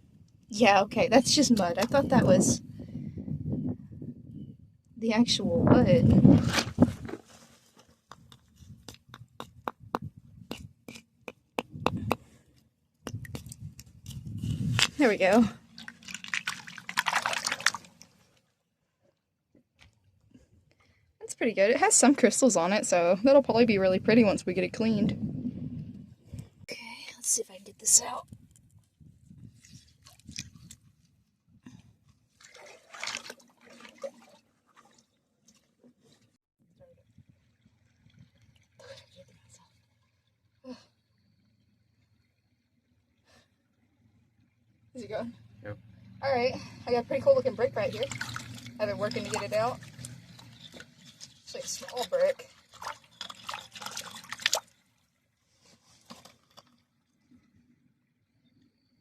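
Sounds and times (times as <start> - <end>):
creek water splashing: 14.8 - 18.4, 32.3 - 35.9, 46.7 - 56.8.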